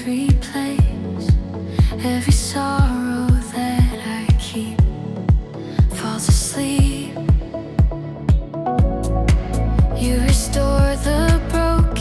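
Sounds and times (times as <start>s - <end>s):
held synth chords: 0.0s - 12.0s
kick drum beat: 0.3s - 12.0s.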